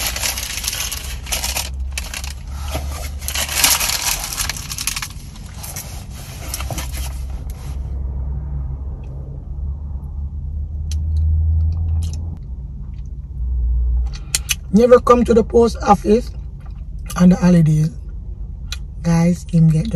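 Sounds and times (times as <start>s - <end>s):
close crackling rustle: 0.0s - 7.8s
car rumble from inside: 0.0s - 19.9s.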